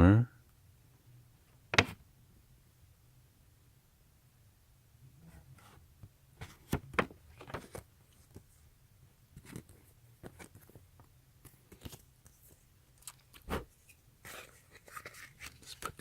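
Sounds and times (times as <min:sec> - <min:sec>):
paper rustling: 0:06.4 - 0:08.4, 0:13.4 - 0:16.0.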